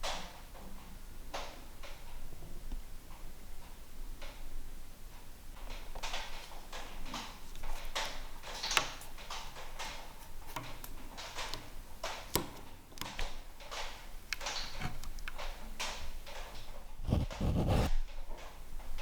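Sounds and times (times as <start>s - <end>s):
knocks and scrapes on wood: 17.1s - 17.9s.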